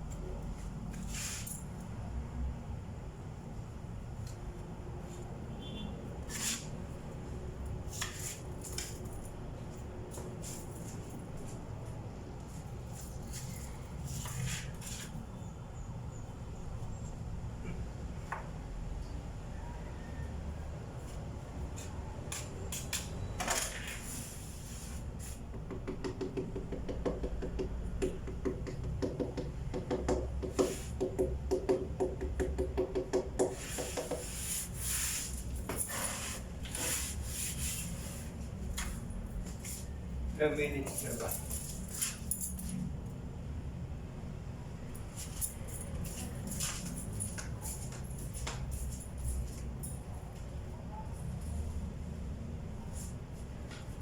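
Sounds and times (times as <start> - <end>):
scrape on wooden tabletop: 33.5 - 38.3
rubbing strokes over wood: 33.5 - 38.4.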